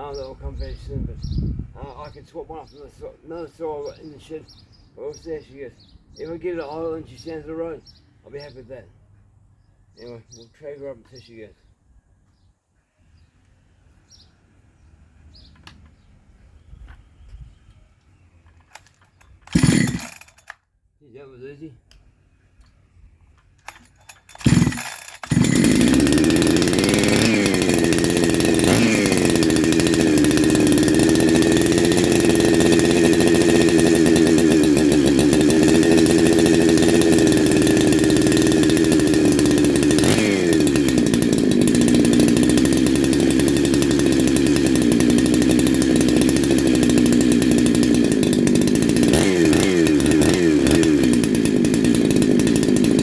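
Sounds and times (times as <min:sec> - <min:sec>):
chainsaw running with throttle blips: 0:18.7 - 0:20.6, 0:23.6 - 0:53.0.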